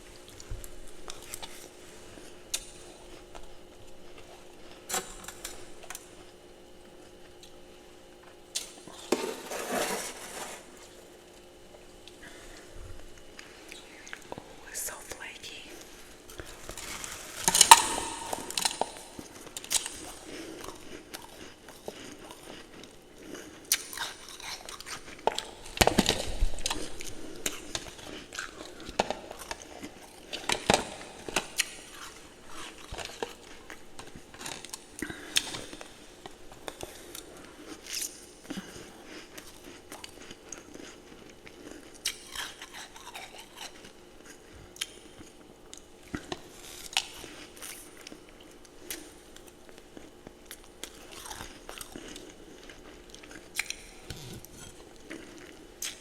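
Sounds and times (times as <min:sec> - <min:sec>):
quiet chewing: 0:00.1 - 0:09.5, 0:10.7 - 0:56.0
person crunching ice: 0:16.6 - 0:22.6.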